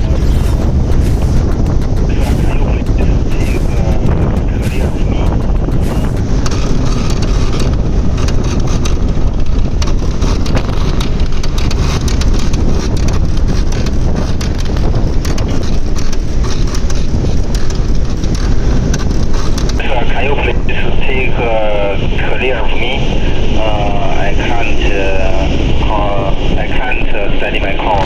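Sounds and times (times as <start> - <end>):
strong wind buffeting microphone: 0.0 - 28.0.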